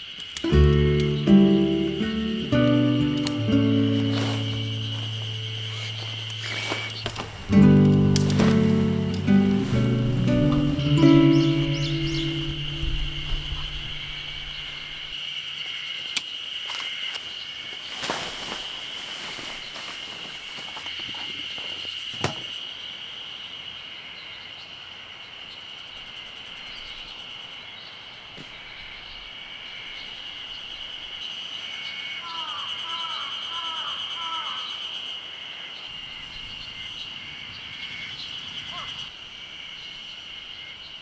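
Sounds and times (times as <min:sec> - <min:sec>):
rustling steps: 0:00.4 - 0:15.2, 0:16.6 - 0:22.6.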